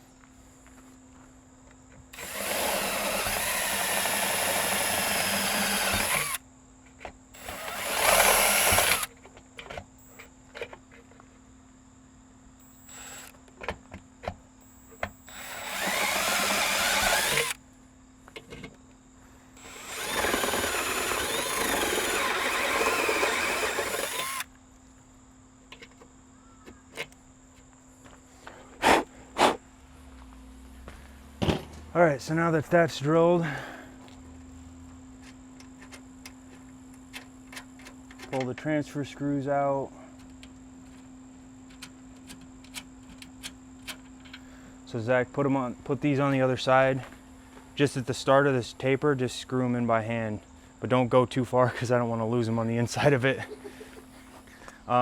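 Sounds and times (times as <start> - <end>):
power drill boring metal: 2.2 - 6.4, 7.4 - 9.1, 12.7 - 13.4, 15.0 - 17.6, 19.6 - 24.5.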